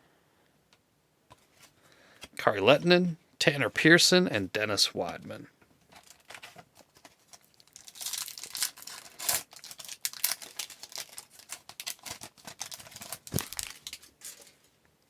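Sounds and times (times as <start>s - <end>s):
cards rustling and clicking: 5.9s - 14.7s
foil wrapper crinkling and tearing: 5.9s - 14.7s.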